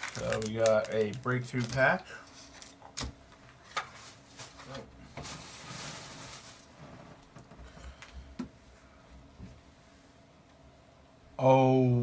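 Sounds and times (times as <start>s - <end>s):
foil wrapper crinkling: 0.0s - 2.8s
foil wrapper tearing: 0.0s - 2.8s.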